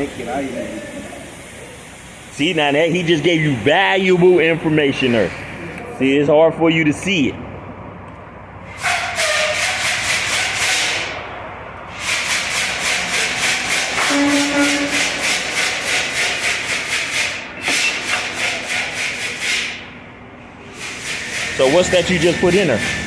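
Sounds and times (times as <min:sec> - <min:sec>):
scrubbing strokes on wheel hub: 0:08.7 - 0:11.2, 0:11.9 - 0:20.0, 0:20.6 - 0:23.0.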